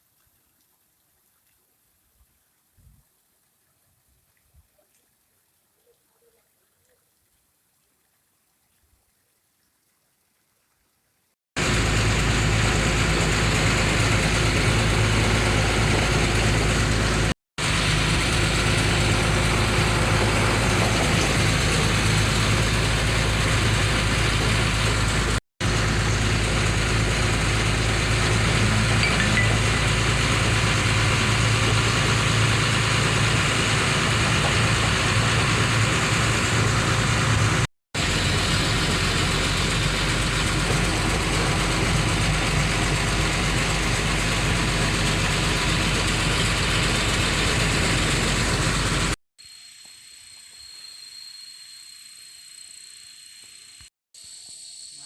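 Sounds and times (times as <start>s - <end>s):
vehicle engine idling: 11.6s - 49.2s.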